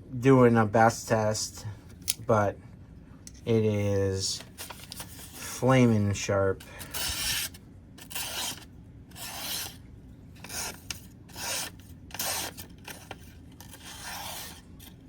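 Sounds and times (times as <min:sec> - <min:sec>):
knife sharpening scrapes: 0:06.8 - 0:09.8, 0:10.4 - 0:13.0, 0:13.7 - 0:14.6.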